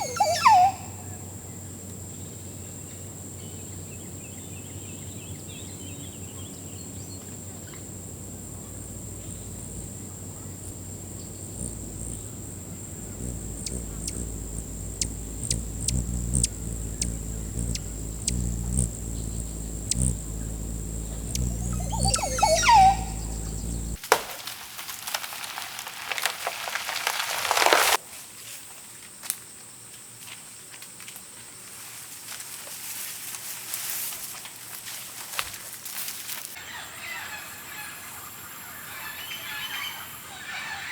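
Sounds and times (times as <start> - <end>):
bird call: 0.0 - 1.2, 8.4 - 24.0
insects droning: 0.0 - 24.0.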